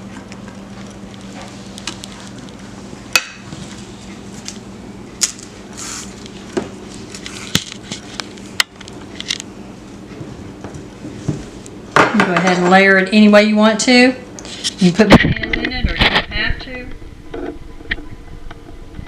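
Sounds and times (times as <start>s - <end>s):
low hum: 12.6s - 19.0s.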